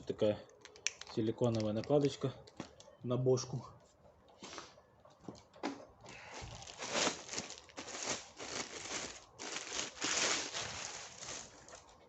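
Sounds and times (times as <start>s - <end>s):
plastic packaging crinkling: 6.3s - 12.0s.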